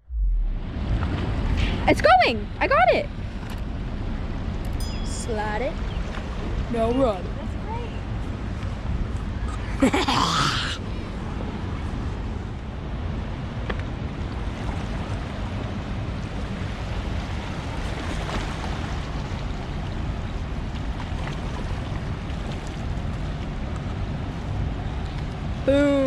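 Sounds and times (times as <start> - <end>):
wind buffeting microphone: 0.0 - 10.1
rushing water: 0.4 - 26.0.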